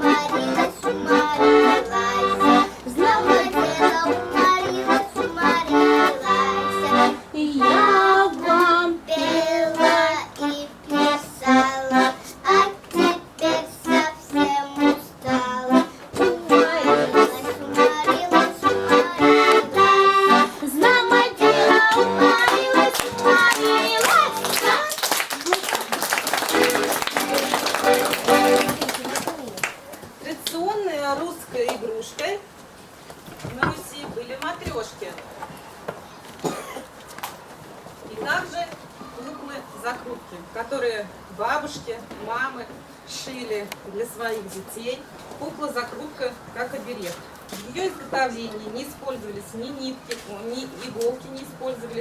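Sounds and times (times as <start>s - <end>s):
girl singing folk song: 0.0s - 25.0s
accordion: 0.0s - 25.2s, 26.0s - 29.4s.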